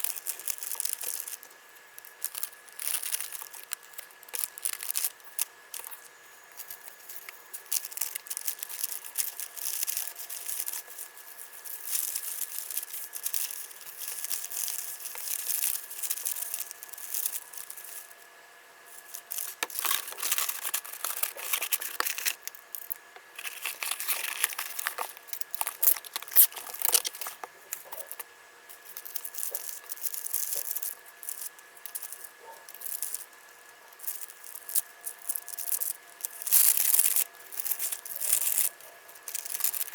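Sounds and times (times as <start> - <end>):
wrapping rustling and crinkling: 0.0 - 18.2, 18.9 - 39.9
tearing: 19.3 - 22.5, 23.4 - 28.2.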